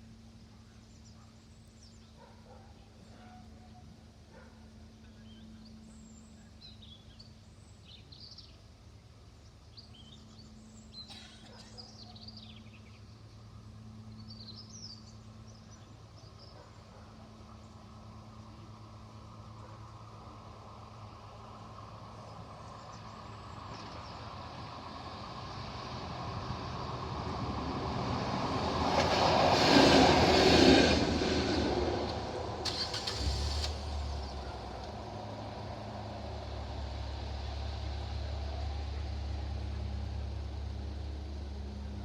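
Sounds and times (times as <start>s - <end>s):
low engine hum: 0.0s - 42.0s
vehicle passing: 24.7s - 42.0s.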